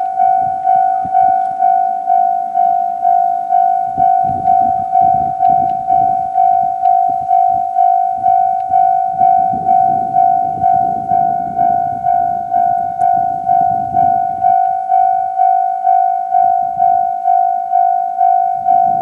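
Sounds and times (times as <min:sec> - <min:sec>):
level crossing warning bell dinging: 0:00.0 - 0:19.0
low uneven train rumble: 0:03.9 - 0:14.6.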